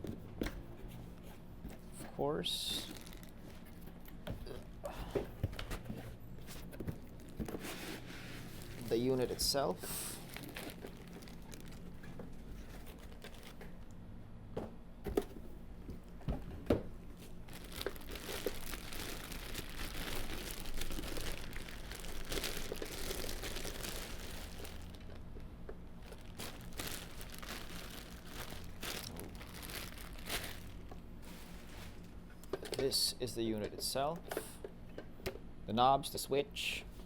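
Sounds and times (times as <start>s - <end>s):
plastic packaging crinkling: 2.7s - 3.8s, 8.4s - 13.8s, 17.3s - 25.4s, 26.0s - 32.0s.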